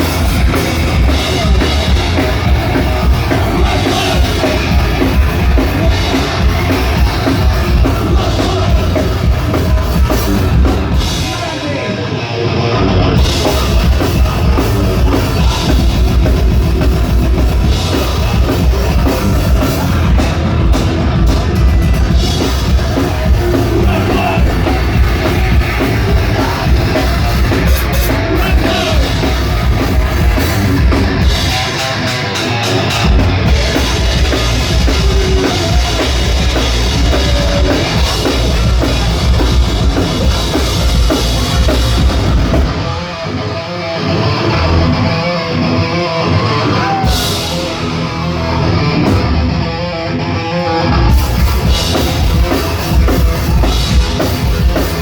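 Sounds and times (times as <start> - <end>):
person singing: 0.0 - 16.6, 21.8 - 48.6
heavy rock band playing: 0.0 - 55.0.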